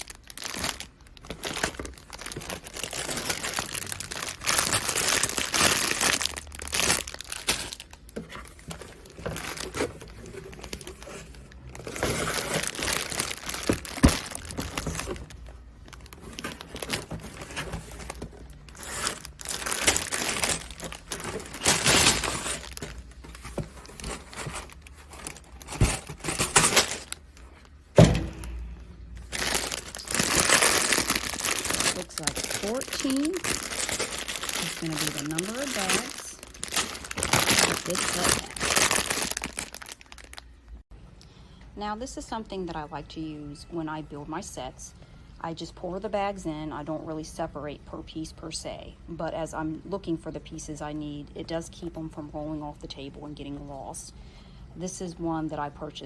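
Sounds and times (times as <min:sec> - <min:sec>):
plastic bags crinkling: 0:00.0 - 0:27.9, 0:29.2 - 0:40.8.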